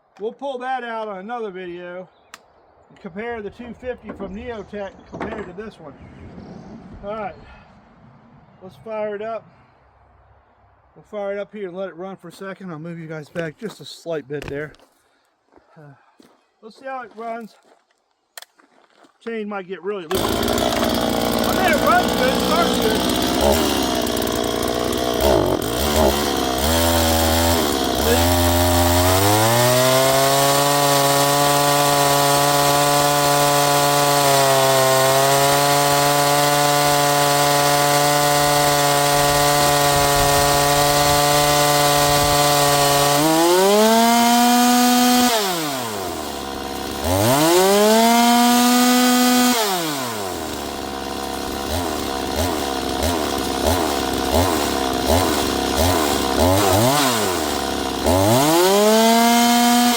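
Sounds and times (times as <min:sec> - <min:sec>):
chainsaw revving and idling: 0:20.1 - 0:59.9.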